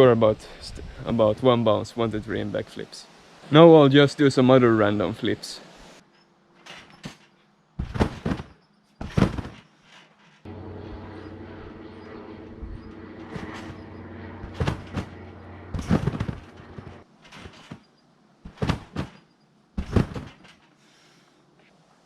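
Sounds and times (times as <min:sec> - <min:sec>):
trampoline bed thudding: 0:06.6 - 0:10.5, 0:12.8 - 0:20.8
steady hum: 0:10.5 - 0:17.0.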